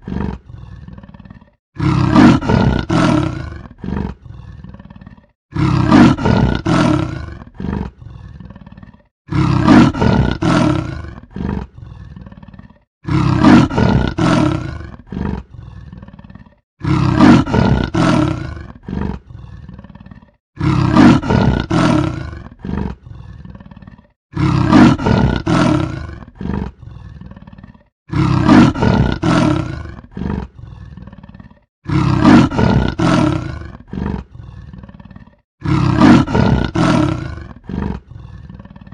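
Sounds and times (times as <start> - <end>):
leopard roaring: 0.0 - 38.9.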